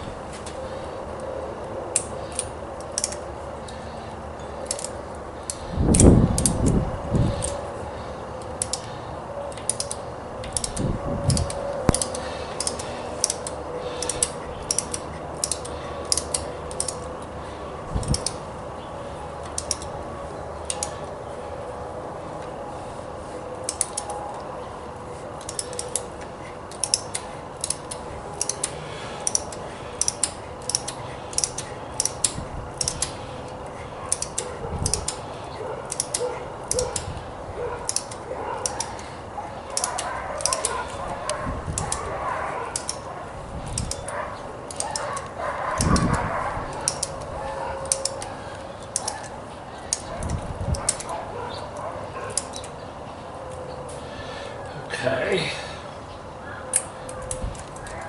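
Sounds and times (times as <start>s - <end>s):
tap wrench clicking: 9.5s - 17.0s, 18.0s - 18.4s, 26.7s - 33.2s, 34.1s - 35.2s, 39.8s - 42.0s.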